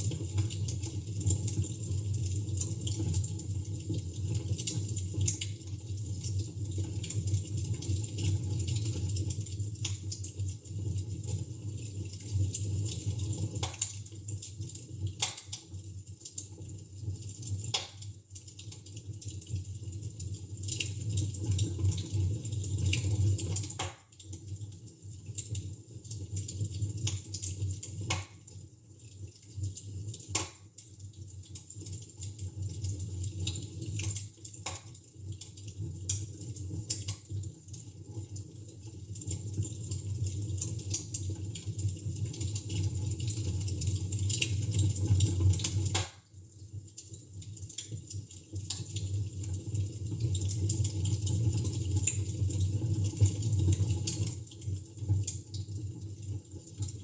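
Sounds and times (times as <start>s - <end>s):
sharp fire pops: 23.7s - 24.1s, 45.9s - 46.2s.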